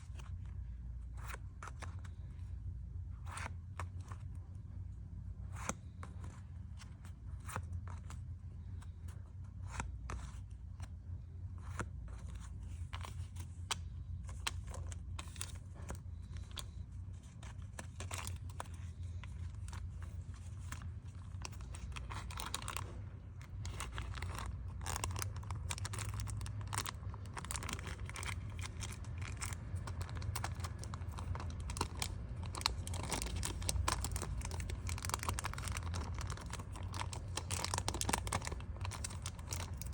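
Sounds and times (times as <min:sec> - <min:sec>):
steady low hum: 0:00.0 - 0:39.9
packing materials rustling: 0:14.3 - 0:39.9.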